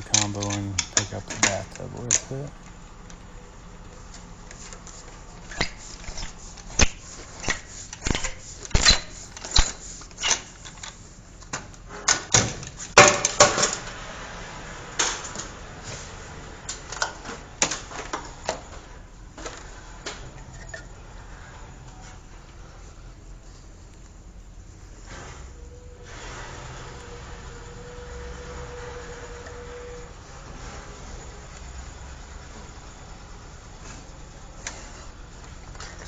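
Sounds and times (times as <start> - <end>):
plastic pipe fittings clattering: 0.0 - 2.3.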